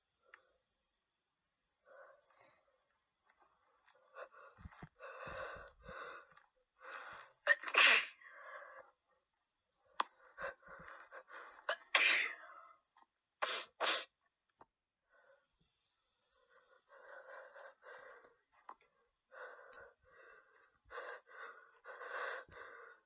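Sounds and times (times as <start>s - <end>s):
catching breaths: 3.6s - 7.4s, 16.3s - 23.0s.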